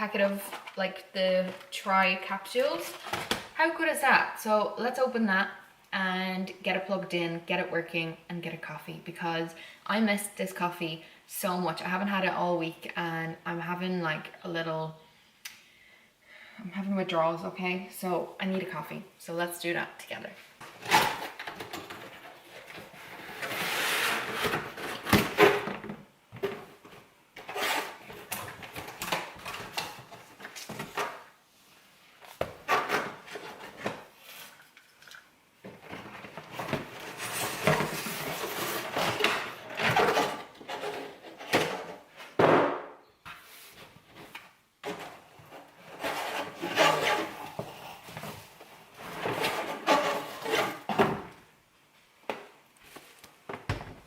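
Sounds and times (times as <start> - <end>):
packaging rustling and scraping: 20.7 - 31.3, 35.6 - 42.2, 43.6 - 51.0.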